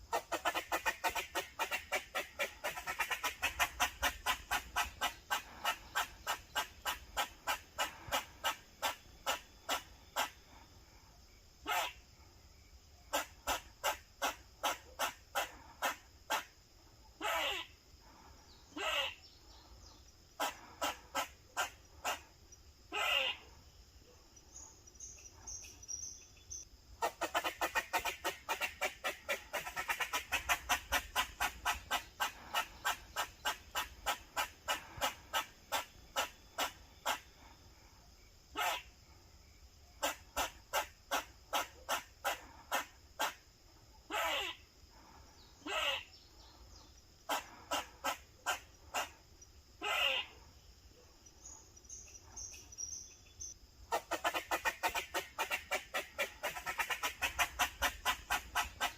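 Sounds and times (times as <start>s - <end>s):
squirrel drawn-out calls: 0.0s - 10.6s, 11.6s - 12.0s, 13.1s - 16.6s, 17.2s - 19.4s, 20.4s - 22.3s, 22.9s - 23.6s, 25.3s - 37.5s, 38.5s - 38.9s, 40.0s - 43.4s, 44.1s - 46.2s, 47.2s - 49.2s, 49.8s - 50.5s, 53.9s - 58.9s
squirrel barking alarm call: 11.6s - 12.0s, 17.2s - 17.7s, 18.7s - 19.2s, 20.4s - 22.3s, 22.9s - 23.5s, 38.5s - 38.9s, 40.0s - 43.4s, 44.1s - 44.6s, 45.6s - 46.2s, 49.8s - 50.4s.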